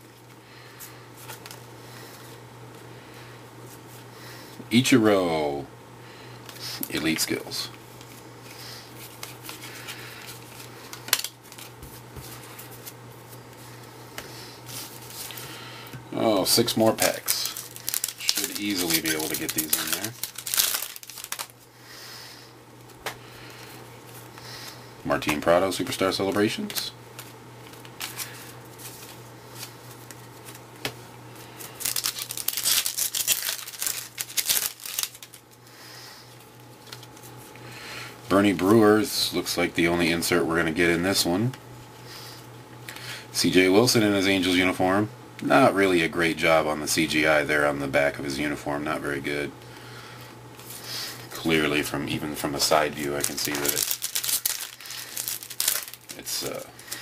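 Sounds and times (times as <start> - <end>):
steady low hum: 0.0 - 57.0
cards rustling on a table: 8.0 - 15.5, 16.9 - 21.6, 22.8 - 35.5, 36.3 - 37.5, 52.4 - 57.0
foil wrapper crinkling and tearing: 9.0 - 11.8, 16.5 - 21.6, 31.6 - 35.6, 52.5 - 57.0.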